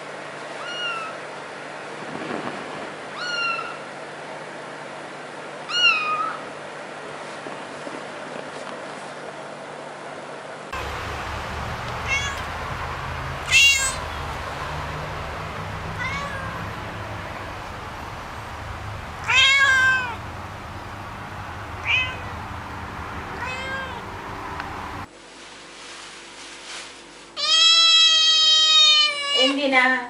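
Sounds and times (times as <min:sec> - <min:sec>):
cat meowing: 0:00.6 - 0:01.2, 0:03.2 - 0:03.8, 0:05.7 - 0:06.4, 0:11.7 - 0:20.3, 0:21.6 - 0:22.4, 0:23.3 - 0:24.1, 0:27.4 - 0:29.6
low steady hum: 0:10.8 - 0:25.2.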